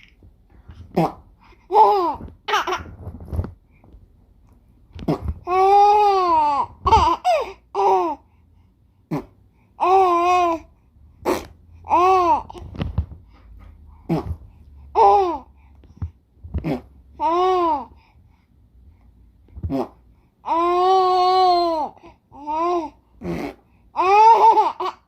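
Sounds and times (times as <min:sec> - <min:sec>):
baby cooing and squealing: 0:05.1 - 0:08.2, 0:17.2 - 0:17.9, 0:19.7 - 0:25.0.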